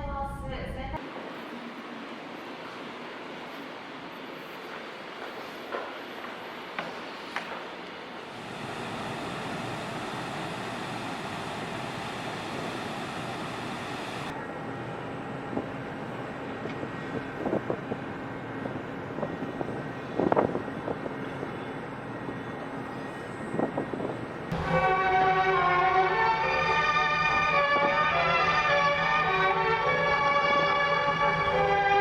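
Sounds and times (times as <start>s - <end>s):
ferry rushing and rumbling: 8.3s - 14.4s.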